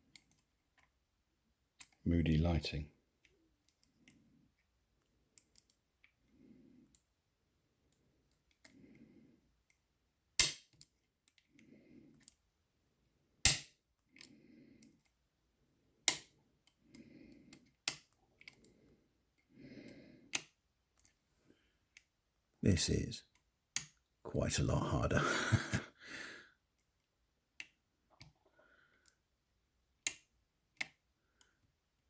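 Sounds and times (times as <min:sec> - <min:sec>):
lock pick metallic clicks: 0:10.4 - 0:11.4, 0:16.0 - 0:16.3, 0:17.5 - 0:18.7.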